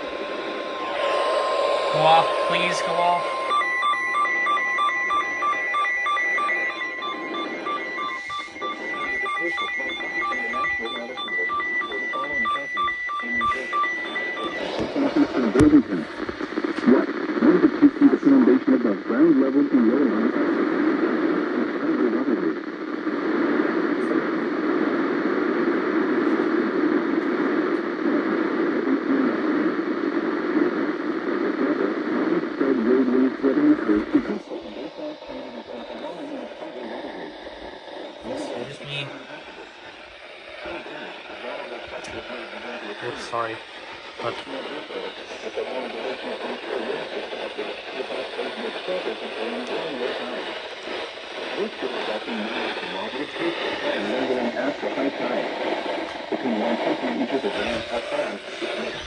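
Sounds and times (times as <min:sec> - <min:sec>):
steady warning alarm tone: 0:00.0 - 0:16.0
radio static hiss: 0:00.0 - 0:59.0
rapid pulsed alert beeping: 0:00.1 - 0:15.1.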